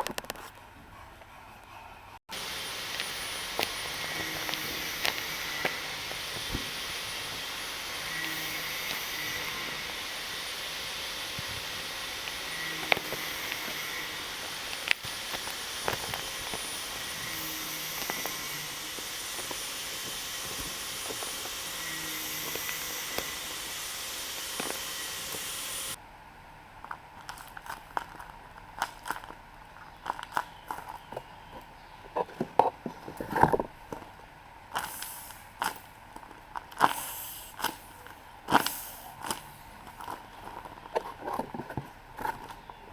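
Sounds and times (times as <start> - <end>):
background hiss: 2.3 - 26.5, 34.7 - 36.0, 36.8 - 39.8.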